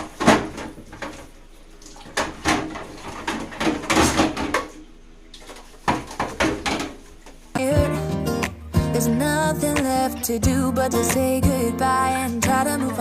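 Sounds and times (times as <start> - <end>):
kitchen things clinking and clattering: 0.0 - 4.8.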